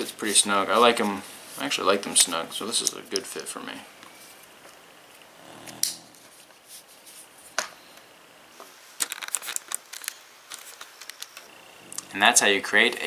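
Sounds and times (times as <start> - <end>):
cord rustling: 8.6 - 12.0.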